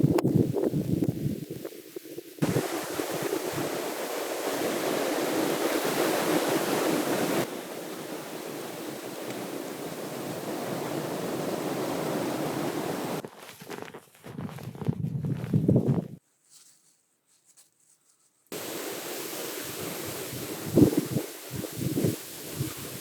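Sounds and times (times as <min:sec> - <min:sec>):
blizzard wind rushing: 0:00.0 - 0:13.2, 0:18.6 - 0:23.0.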